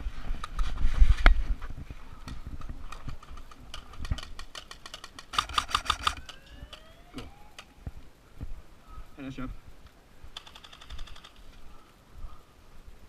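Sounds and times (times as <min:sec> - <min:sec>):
sharp clicks: 0:02.3 - 0:07.8, 0:10.4 - 0:11.6.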